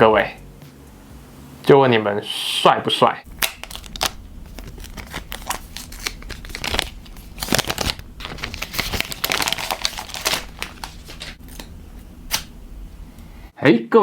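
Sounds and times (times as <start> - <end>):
plastic film peeling and crinkling: 3.3 - 12.6.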